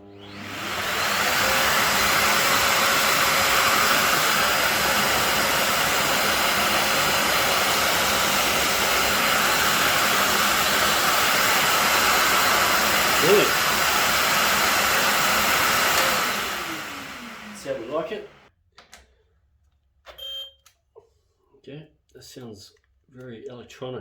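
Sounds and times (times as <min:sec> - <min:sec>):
vacuum cleaner running: 0:00.0 - 0:18.5.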